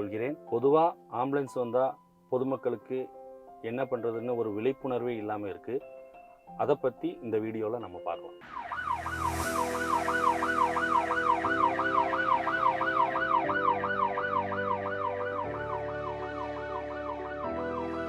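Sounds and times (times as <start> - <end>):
background music: 0.0 - 18.0
brief whoosh: 8.4 - 13.0
ambulance siren yelping: 8.4 - 18.0.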